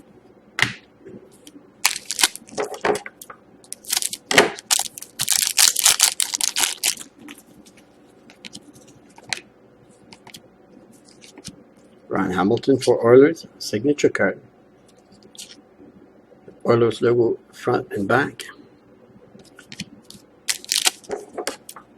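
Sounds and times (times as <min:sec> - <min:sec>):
trading cards rustling and snapping: 0:01.9 - 0:02.8, 0:03.7 - 0:07.4, 0:19.4 - 0:21.8.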